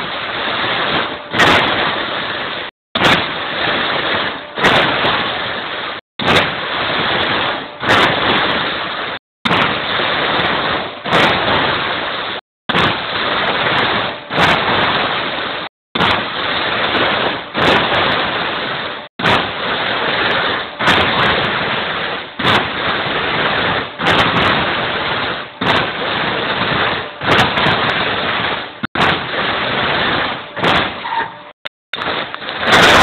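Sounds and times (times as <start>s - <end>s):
steady machine noise: 0.0s - 33.0s
sharp metallic punching hits: 9.4s - 12.0s.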